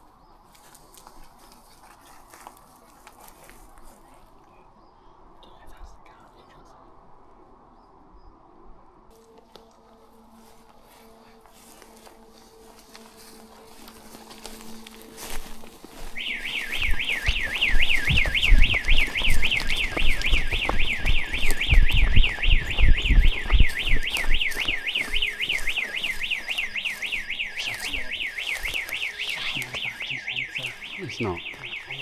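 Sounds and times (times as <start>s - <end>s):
security alarm siren warbling: 10.0s - 32.0s
heavy low thuds: 16.7s - 25.0s.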